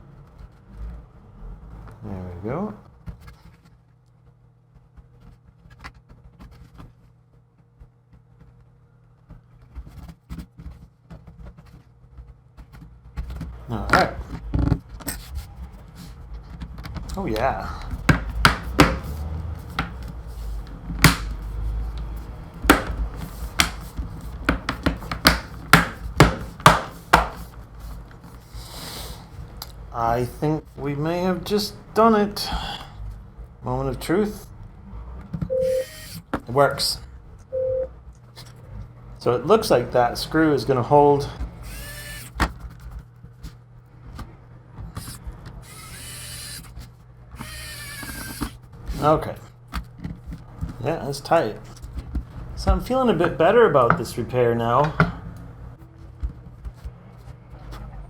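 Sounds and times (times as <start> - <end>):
low handling rumble: 13.5 - 26.2, 48.6 - 58.0
clicks of hard plastic parts: 20.9 - 27.6
rubbing hiss: 28.4 - 29.4.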